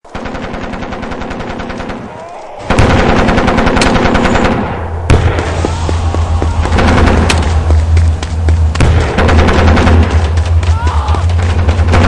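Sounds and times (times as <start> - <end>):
machine-gun fire: 2.7 - 5.6, 6.7 - 7.8, 8.7 - 12.0
low rumble: 3.1 - 12.0
heavy boom: 5.0 - 8.0.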